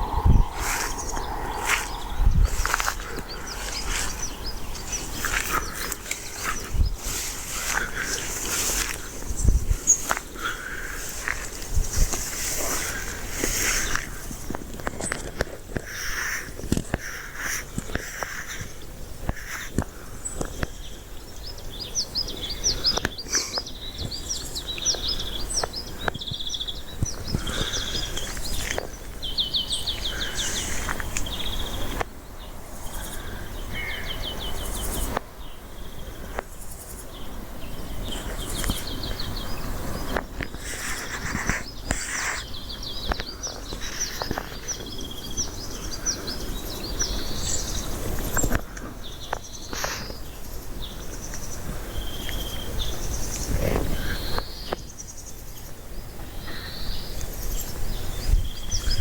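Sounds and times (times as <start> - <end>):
wind noise rumble: 0.0 - 23.2, 50.0 - 55.1, 57.8 - 59.0.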